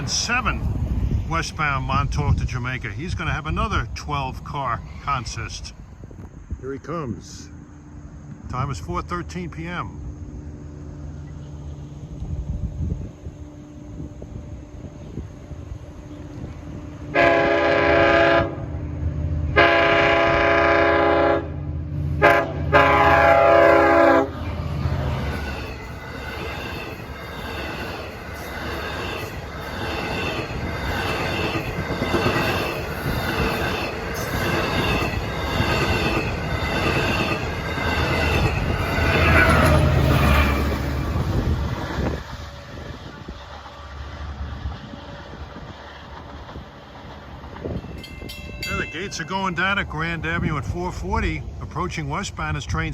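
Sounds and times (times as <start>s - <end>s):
locomotive air horn: 16.8s - 18.7s, 19.5s - 21.6s, 22.2s - 24.3s
train wheels clickety-clack: 25.1s - 43.8s, 44.6s - 48.5s.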